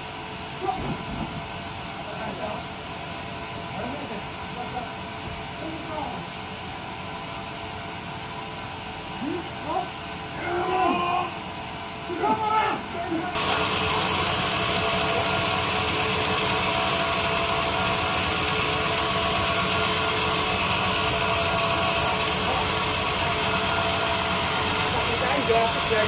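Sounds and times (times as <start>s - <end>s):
machine running: 13.2s - 26.0s.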